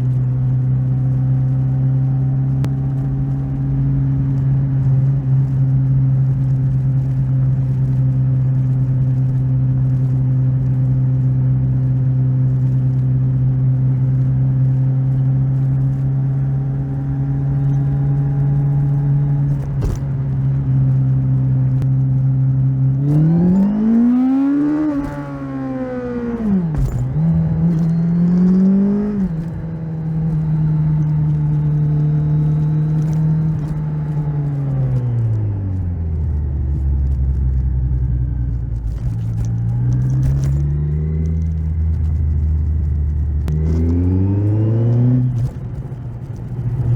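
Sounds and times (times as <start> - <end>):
motorcycle engine revving: 0.0 - 46.9.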